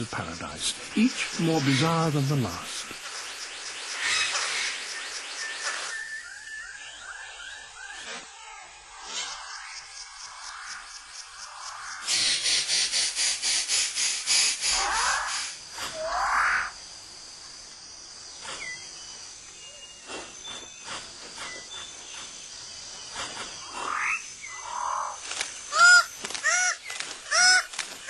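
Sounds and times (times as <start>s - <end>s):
harsh repeated bird calls: 0.0s - 16.8s, 22.9s - 28.0s
high insect drone: 0.0s - 28.0s
rising whistled bird calls: 4.0s - 9.9s, 18.5s - 22.3s.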